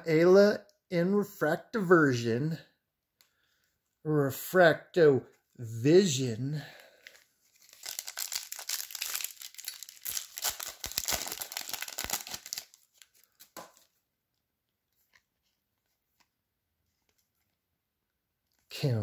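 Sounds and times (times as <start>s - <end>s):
foil wrapper tearing and crinkling: 7.0s - 13.6s.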